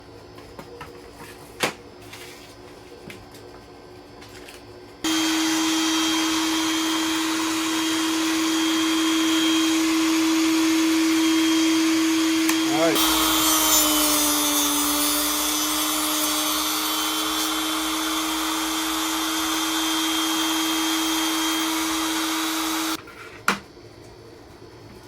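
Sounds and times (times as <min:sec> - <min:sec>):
electric motor humming: 0:05.1 - 0:23.0.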